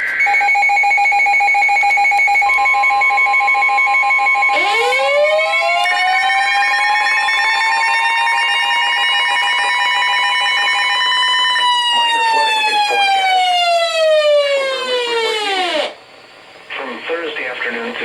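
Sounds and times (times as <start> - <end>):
siren winding up: 0.0 - 16.0.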